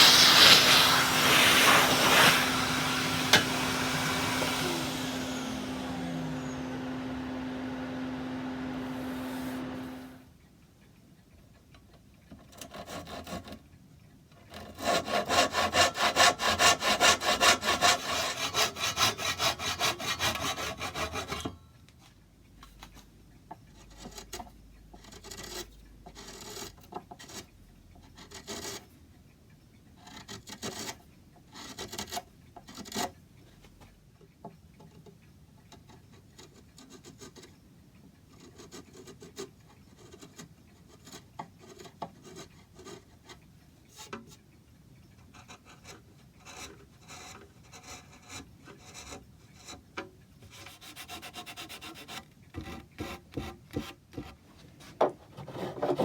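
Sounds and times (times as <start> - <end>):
hand tool rasping wood: 0.0 - 7.4, 8.7 - 10.1, 12.4 - 13.6, 14.5 - 21.6, 23.8 - 27.5, 50.5 - 56.0.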